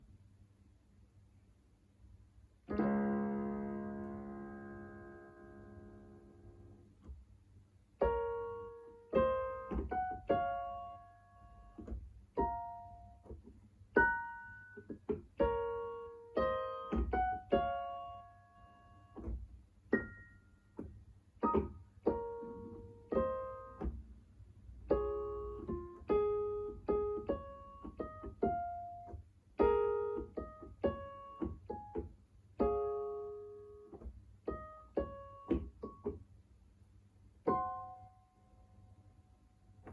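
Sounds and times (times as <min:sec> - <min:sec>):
electronic keyboard played slowly: 0:02.7 - 0:07.0, 0:08.0 - 0:13.4, 0:14.0 - 0:19.3, 0:19.9 - 0:24.0, 0:24.8 - 0:36.2, 0:37.4 - 0:38.6.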